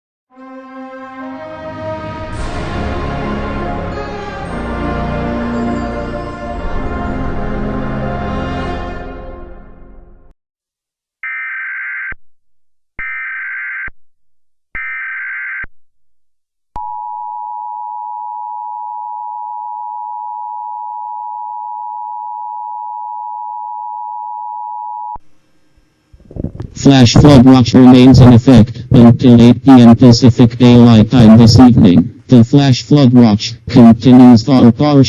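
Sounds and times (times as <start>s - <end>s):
music: 0.3s - 10.3s.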